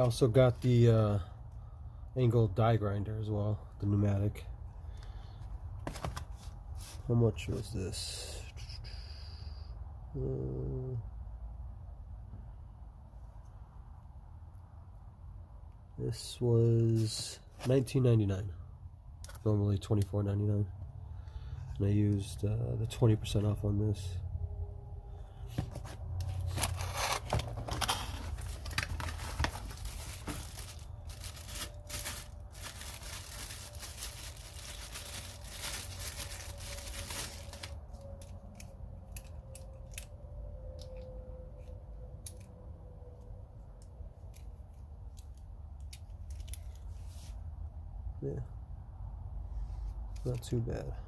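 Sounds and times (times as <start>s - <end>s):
packaging tearing and crinkling: 26.2s - 37.8s
small clicks of parts handled: 38.2s - 40.1s, 40.8s - 42.5s, 43.8s - 46.9s.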